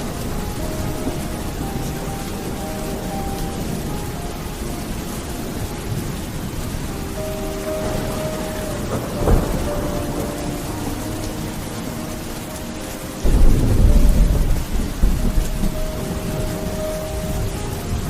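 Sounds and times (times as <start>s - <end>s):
low thunder rumble: 0.0s - 18.0s
steady rain: 0.0s - 18.0s
thunder crack: 4.9s - 18.0s.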